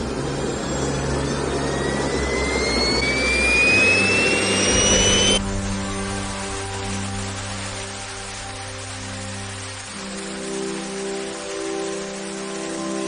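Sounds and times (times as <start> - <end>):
turbine engines roaring and whining: 0.0 - 13.0.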